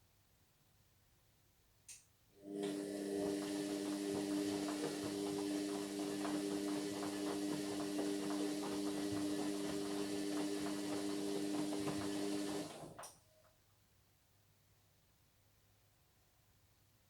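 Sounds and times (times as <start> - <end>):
washing machine drum motor humming: 2.4 - 13.1.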